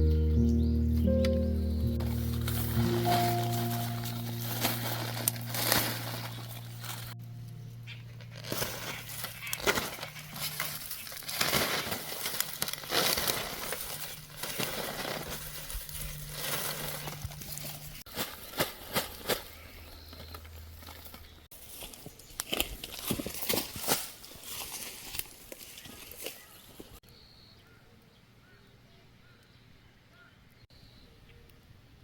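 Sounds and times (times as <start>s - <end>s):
crackles and clicks: 1.0s - 21.5s
rustling and crinkling: 2.0s - 27.0s.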